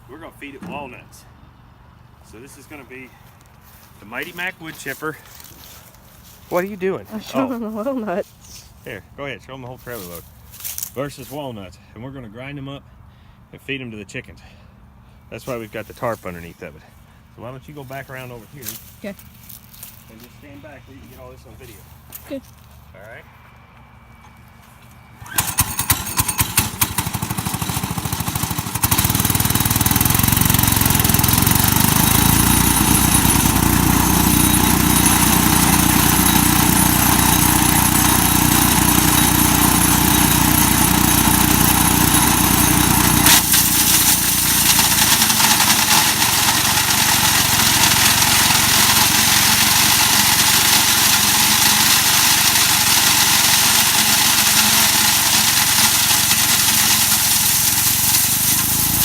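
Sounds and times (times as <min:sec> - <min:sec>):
wood chipper engine starting: 0:00.4 - 0:01.4, 0:25.0 - 0:59.0.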